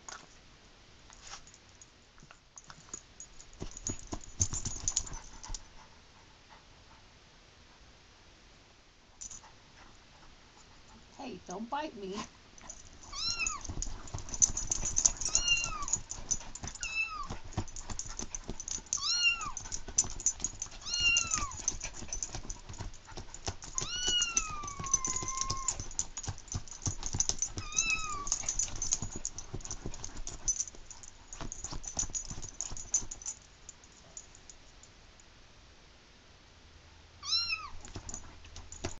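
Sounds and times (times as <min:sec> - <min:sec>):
kitten meow ringtone: 0:13.1 - 0:13.6, 0:27.6 - 0:28.3, 0:37.2 - 0:37.7.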